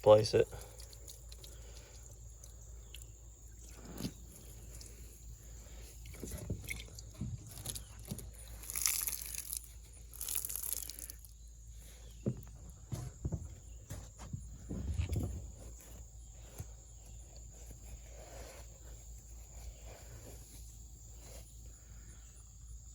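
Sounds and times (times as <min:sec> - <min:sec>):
wet sponge squeezing: 0:00.5 - 0:12.0.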